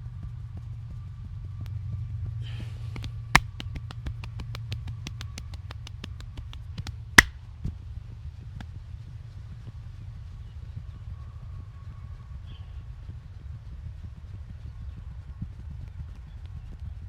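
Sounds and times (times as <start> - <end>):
hands clicking and snapping: 3.0 - 7.3
loud cracks: 3.4 - 7.3.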